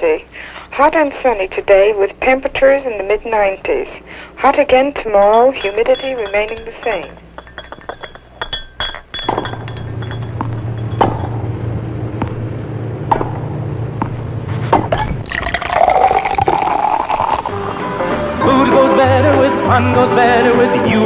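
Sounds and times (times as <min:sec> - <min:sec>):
glass clinking: 0:04.7 - 0:11.6, 0:14.9 - 0:17.5
drink being poured: 0:15.2 - 0:17.6.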